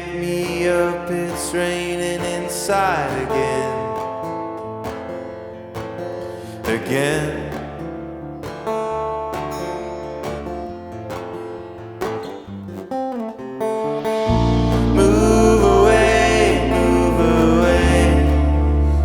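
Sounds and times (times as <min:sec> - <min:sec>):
picked guitar notes: 0:00.0 - 0:19.0
band playing: 0:13.6 - 0:19.0.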